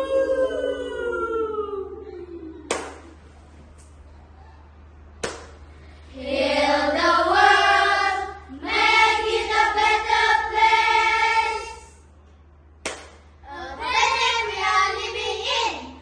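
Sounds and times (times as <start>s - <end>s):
children singing in unison: 6.2s - 11.9s.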